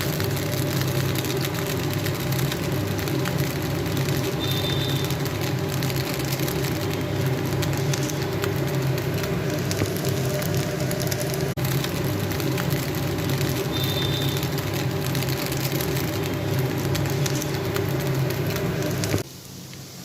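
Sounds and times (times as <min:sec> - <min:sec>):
food frying in a pan: 0:00.0 - 0:20.0
low mechanical hum: 0:00.0 - 0:20.0.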